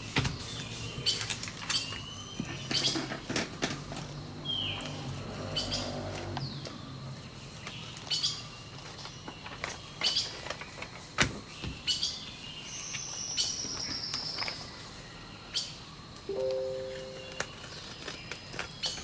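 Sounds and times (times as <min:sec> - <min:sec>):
bird chirps: 0:15.5 - 0:18.2.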